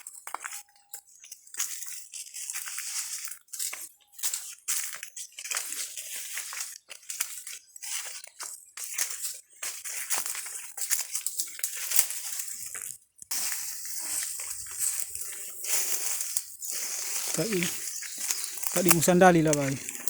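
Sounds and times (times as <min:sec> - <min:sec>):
digging in loose ground: 0:13.3 - 0:20.0.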